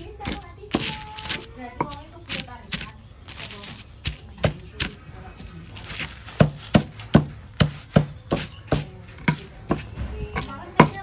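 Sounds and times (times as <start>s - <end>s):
knife chopping on a board: 0.2s - 2.9s, 5.8s - 11.0s.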